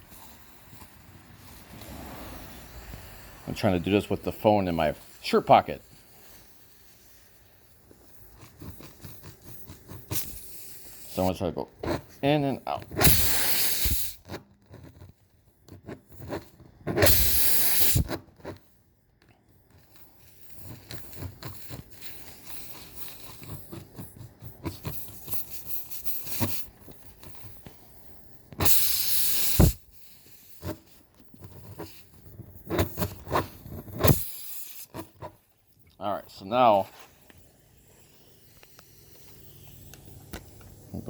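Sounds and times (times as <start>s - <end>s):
loud bursts of hiss: 0.0s - 7.1s, 13.0s - 14.2s, 17.0s - 18.1s, 28.6s - 30.6s
reamer tool scraping in tire: 0.0s - 15.0s, 19.8s - 40.6s.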